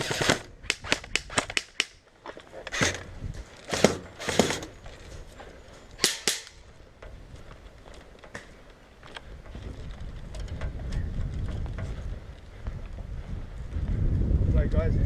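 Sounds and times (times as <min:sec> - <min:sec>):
airsoft gun shots: 0:00.0 - 0:02.0, 0:03.7 - 0:04.7, 0:06.0 - 0:06.6.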